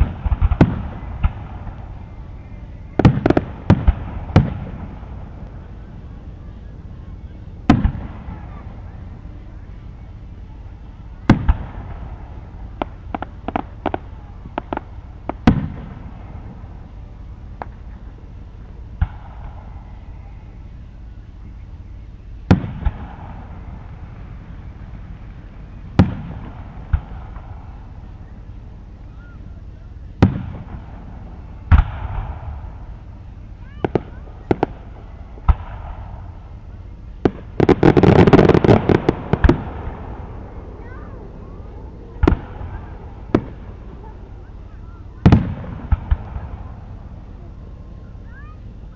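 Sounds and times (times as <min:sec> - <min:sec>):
fireworks cracks and pops: 0:00.0 - 0:02.3, 0:11.2 - 0:16.9, 0:33.6 - 0:40.2
fireworks booming: 0:00.0 - 0:48.9.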